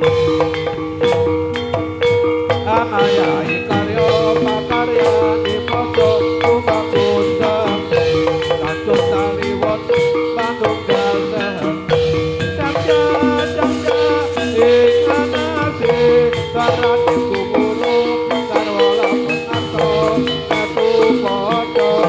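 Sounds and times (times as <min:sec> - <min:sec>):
drums: 0:00.0 - 0:22.0
metallophones ringing a melody: 0:00.0 - 0:22.0
rattling percussion: 0:00.0 - 0:22.0.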